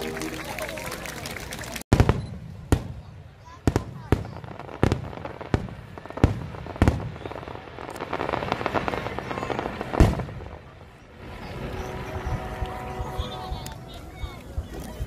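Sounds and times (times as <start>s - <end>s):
fireworks crackling: 0.0s - 15.0s
firework booms: 1.9s - 13.1s.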